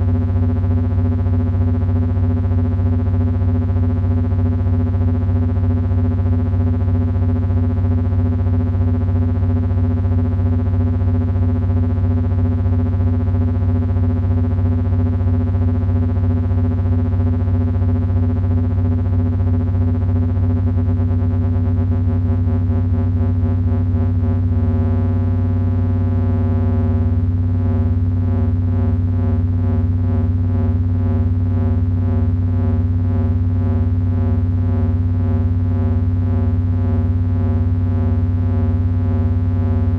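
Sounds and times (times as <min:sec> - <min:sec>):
strong low hum: 0:08.9 - 0:39.9.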